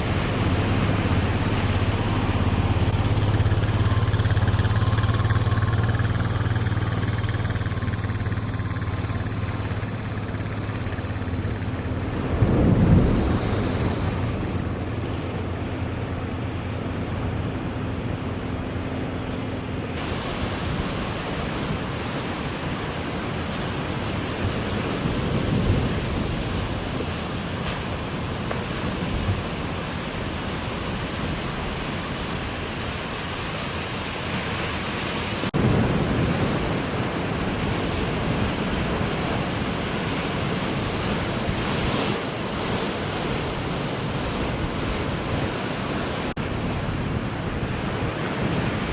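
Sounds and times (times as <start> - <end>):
wind buffeting microphone: 0.0 - 18.4
low motor hum: 0.0 - 26.9
ocean surf rushing: 0.0 - 48.9.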